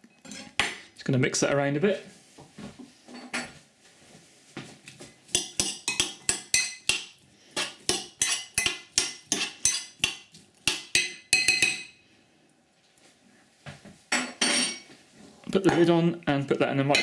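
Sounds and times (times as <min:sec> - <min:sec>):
utensil clinking against glass dish: 0:05.4 - 0:11.9.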